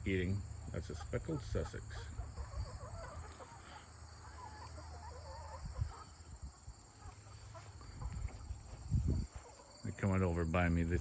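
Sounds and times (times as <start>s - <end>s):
chickens clucking softly: 0.0s - 11.0s.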